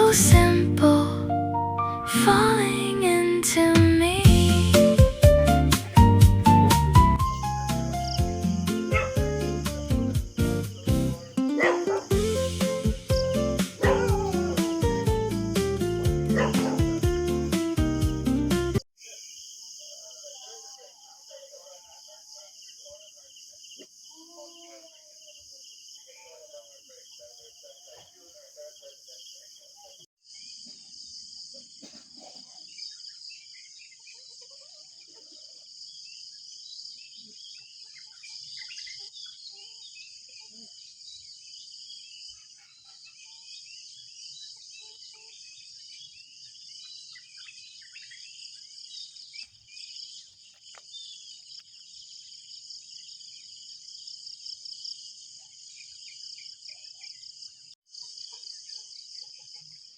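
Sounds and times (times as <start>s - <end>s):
insects trilling: 4.8s - 12.2s, 19.0s - 59.9s
bird chirps and calls: 32.2s - 52.3s.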